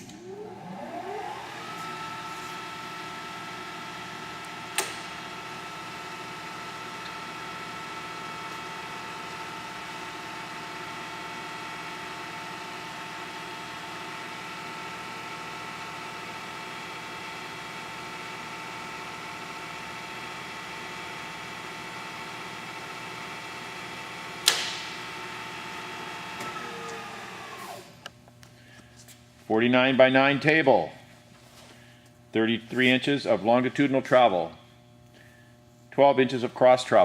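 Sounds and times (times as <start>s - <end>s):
milling machine whine: 0.0s - 4.7s, 25.2s - 28.1s.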